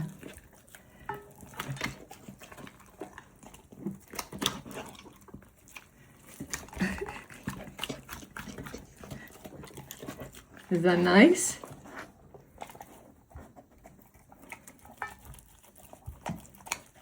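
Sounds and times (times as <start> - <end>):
puppy chewing: 0.0 - 17.0.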